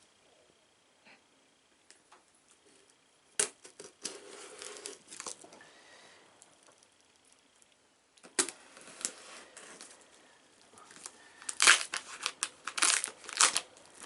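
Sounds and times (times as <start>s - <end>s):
packing material crinkling and tearing: 3.7s - 5.5s, 10.8s - 14.0s.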